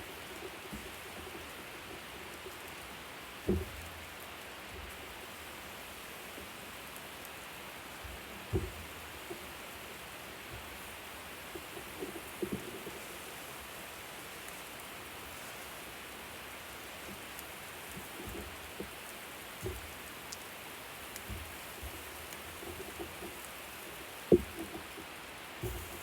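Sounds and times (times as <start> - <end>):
food sizzling on grill: 0.0 - 26.0
soft knocks: 3.4 - 4.0, 8.1 - 9.4, 24.2 - 25.0, 25.6 - 26.0.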